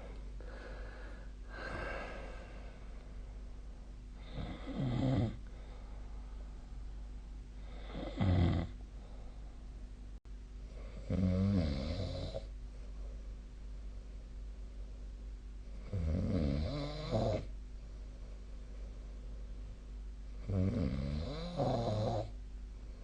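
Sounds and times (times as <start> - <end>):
steady low hum: 0.0 - 23.0
person snoring: 0.4 - 2.8, 4.2 - 5.7, 7.6 - 8.8, 10.9 - 12.5, 15.8 - 17.5, 20.4 - 22.4.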